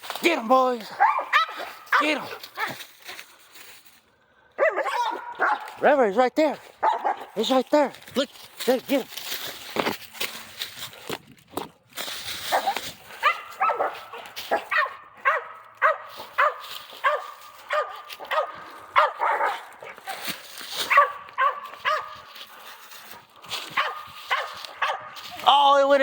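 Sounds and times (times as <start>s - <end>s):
dogs barking: 0.9s - 2.8s, 4.6s - 5.8s, 6.8s - 7.4s, 12.5s - 20.2s, 20.8s - 22.5s, 23.7s - 25.3s.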